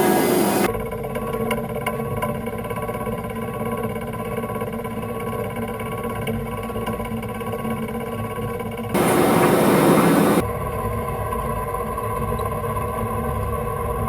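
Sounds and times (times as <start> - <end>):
machine tool humming: 0.0 - 0.7, 9.0 - 10.4.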